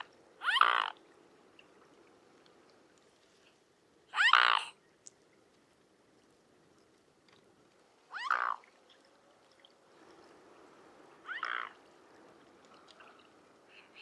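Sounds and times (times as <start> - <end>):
swan calling: 0.4 - 1.0, 4.2 - 4.8, 8.1 - 8.7, 11.3 - 11.8.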